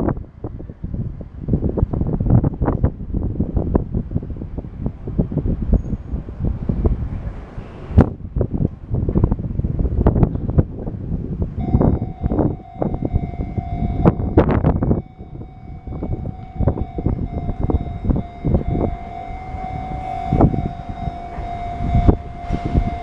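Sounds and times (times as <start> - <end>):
steady high whine: 11.6 - 23.0.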